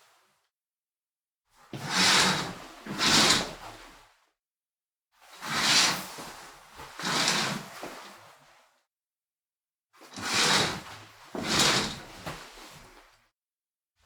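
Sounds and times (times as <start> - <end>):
curtain swishing along rail: 7.0 - 7.6, 10.2 - 12.5.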